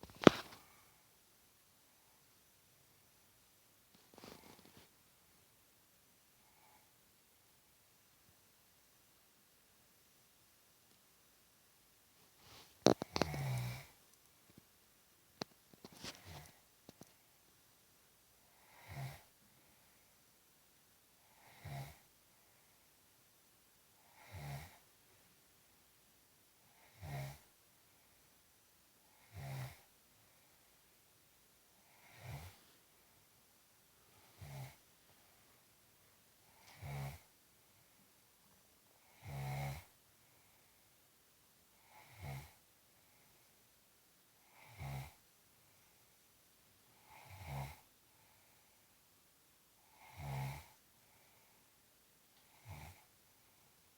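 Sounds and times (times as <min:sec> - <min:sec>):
quiet breathing: 0:00.0 - 0:02.5, 0:03.1 - 0:05.6, 0:06.2 - 0:07.3, 0:12.1 - 0:14.8, 0:15.4 - 0:17.5, 0:18.2 - 0:20.4, 0:21.1 - 0:23.1, 0:26.5 - 0:53.9
snoring: 0:12.6 - 0:14.0, 0:18.5 - 0:19.4, 0:21.2 - 0:22.1, 0:24.0 - 0:24.9, 0:26.6 - 0:27.5, 0:29.1 - 0:29.9, 0:31.8 - 0:32.7, 0:34.2 - 0:34.8, 0:36.5 - 0:37.3, 0:39.0 - 0:40.0, 0:41.8 - 0:42.6, 0:44.4 - 0:45.2, 0:46.9 - 0:47.9, 0:49.8 - 0:51.5, 0:52.4 - 0:53.1
person snoring: 0:12.8 - 0:14.0, 0:18.5 - 0:19.3, 0:31.9 - 0:32.7, 0:36.6 - 0:37.3, 0:49.9 - 0:50.8.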